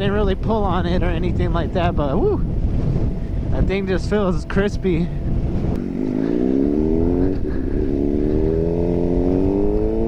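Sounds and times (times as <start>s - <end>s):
motorcycle engine accelerating: 2.4s - 10.0s.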